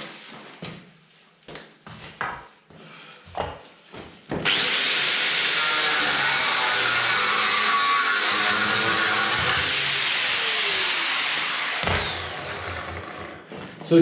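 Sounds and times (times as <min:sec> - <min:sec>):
grinder motor winding down: 0:04.4 - 0:13.4
angle grinder cutting steel: 0:04.4 - 0:13.5.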